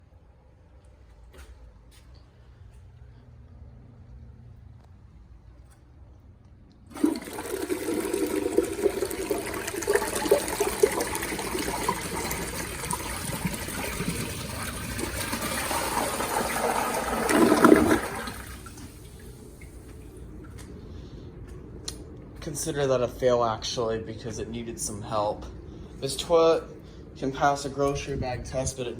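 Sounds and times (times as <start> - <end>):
toilet flushing: 6.9 - 20.6.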